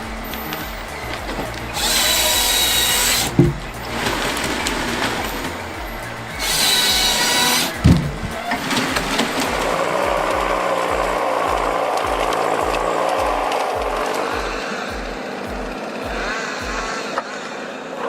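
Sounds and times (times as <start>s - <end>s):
chain saw cutting log: 0.0s - 14.9s
background music: 0.0s - 17.7s
log thud: 3.1s - 5.6s.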